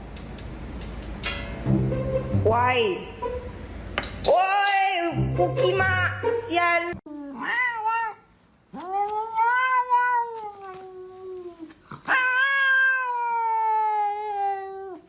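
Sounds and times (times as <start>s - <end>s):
cat yowling: 7.3s - 15.0s.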